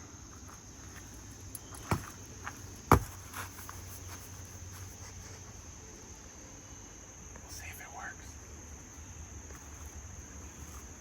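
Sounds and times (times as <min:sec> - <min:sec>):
insects droning: 0:00.0 - 0:11.0
sharp thumps: 0:02.9 - 0:03.2.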